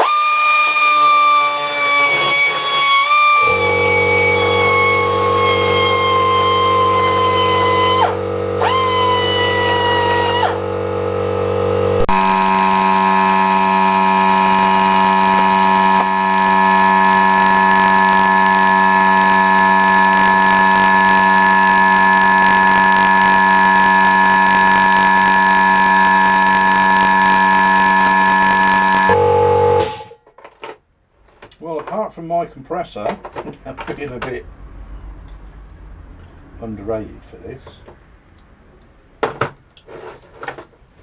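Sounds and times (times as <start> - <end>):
air compressor running: 0.0 - 30.2
air die grinder whining: 0.0 - 30.2.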